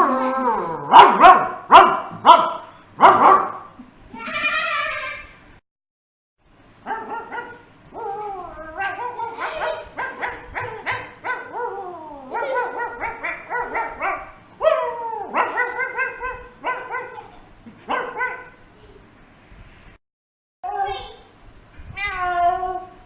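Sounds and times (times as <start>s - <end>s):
person imitating dog barks: 0.0s - 1.5s, 6.9s - 17.2s.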